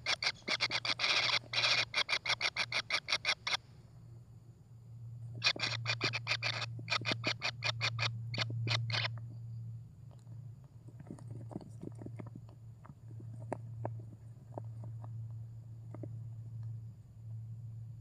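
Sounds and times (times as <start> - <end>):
nestlings raspy begging calls: 0.0 - 3.6, 5.4 - 9.1
steady low hum: 0.0 - 18.0.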